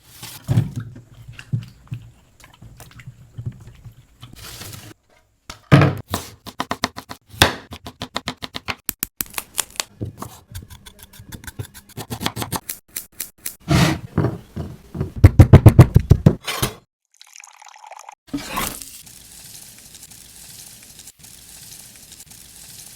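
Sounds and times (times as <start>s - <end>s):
knife chopping on cutting board: 6.0s - 8.8s, 10.1s - 16.6s
knife scraping cutting board: 10.2s - 15.0s, 18.3s - 18.8s.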